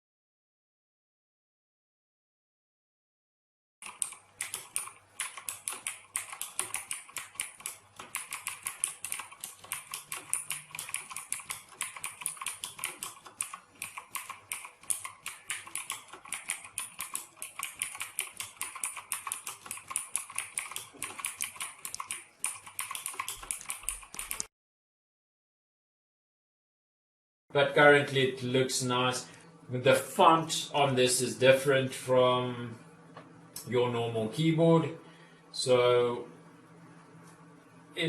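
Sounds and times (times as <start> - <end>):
fast typing on clicky keyboard: 3.8 - 24.5.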